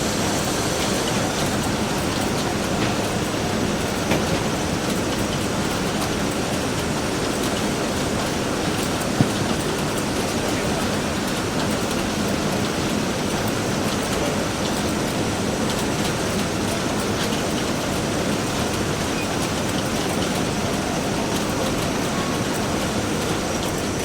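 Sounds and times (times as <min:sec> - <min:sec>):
construction machinery noise: 0:00.0 - 0:24.0
faint knocks and clicks: 0:02.7 - 0:03.4, 0:04.0 - 0:04.7.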